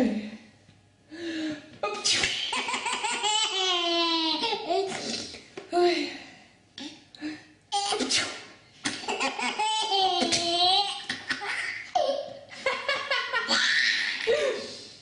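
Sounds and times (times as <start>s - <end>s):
baby laughing: 2.3s - 5.0s, 8.8s - 14.4s.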